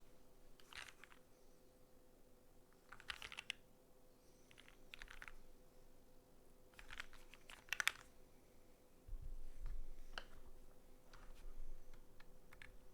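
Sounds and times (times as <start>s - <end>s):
mechanical keyboard typing: 2.8s - 3.6s, 4.5s - 5.4s, 6.8s - 8.1s, 12.0s - 12.9s.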